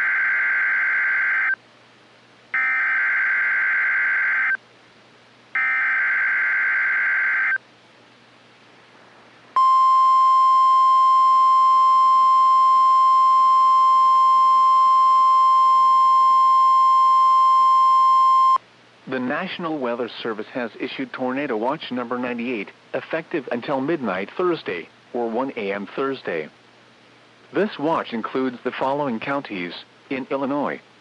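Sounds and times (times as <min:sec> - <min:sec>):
steady warning alarm tone: 0:02.6 - 0:04.6, 0:05.6 - 0:07.6, 0:09.6 - 0:18.6.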